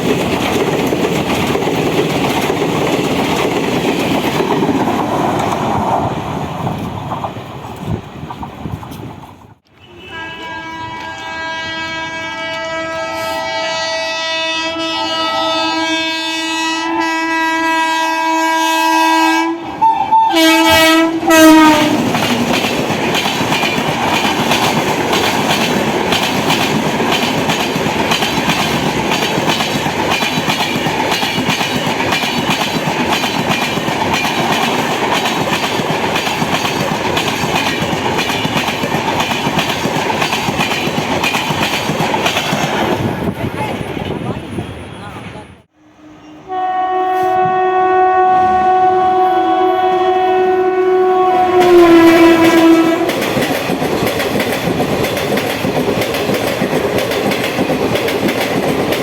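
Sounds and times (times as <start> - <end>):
train wheels clattering on rails: 0.0 - 9.6, 20.7 - 44.4, 51.6 - 59.0
locomotive horn blast: 9.7 - 22.2, 45.7 - 53.2.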